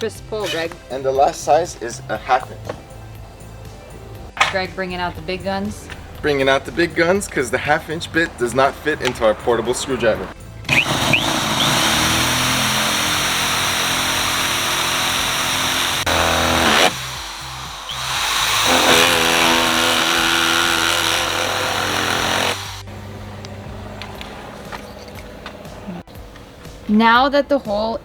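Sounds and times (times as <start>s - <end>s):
electric drill boring through plastic: 10.7s - 22.8s.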